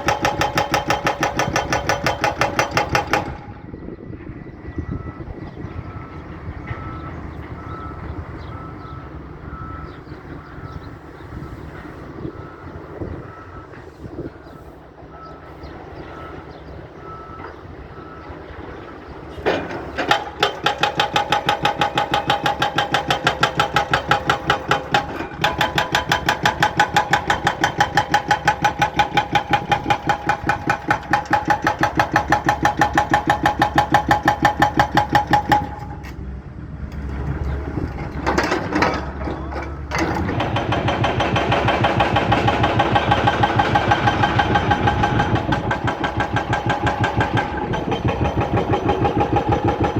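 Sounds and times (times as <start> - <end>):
hydraulic breaker hammering: 0.0 - 3.9, 19.3 - 36.2, 37.2 - 49.9
excavator engine: 0.0 - 49.9.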